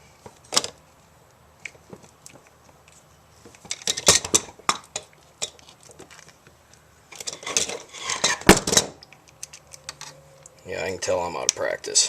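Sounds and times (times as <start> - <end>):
metal parts and tools clinking: 7.1 - 10.5.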